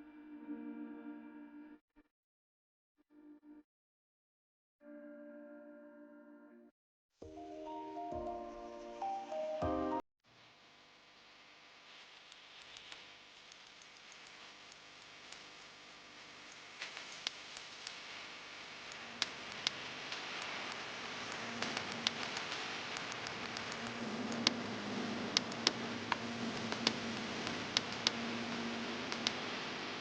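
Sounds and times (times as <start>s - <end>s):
steady hiss: 11.1s - 30.0s
sharp clicks and taps: 18.9s - 24.6s, 25.3s - 28.2s, 29.1s - 29.4s.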